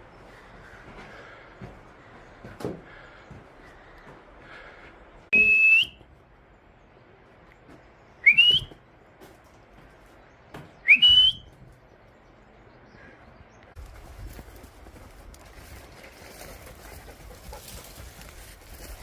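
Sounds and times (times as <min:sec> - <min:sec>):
rising whistles: 0:05.3 - 0:06.0, 0:08.2 - 0:08.8, 0:10.8 - 0:11.6.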